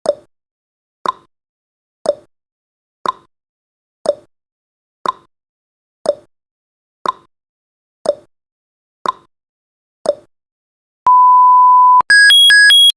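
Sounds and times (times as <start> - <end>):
loud steady beep: 11.1 - 12.9.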